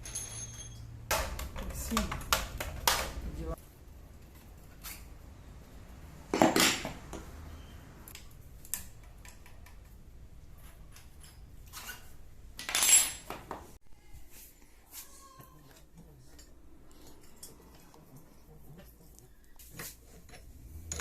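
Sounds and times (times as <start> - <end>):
metal tools clinking: 0.0 - 1.0, 10.6 - 13.4, 15.8 - 18.3.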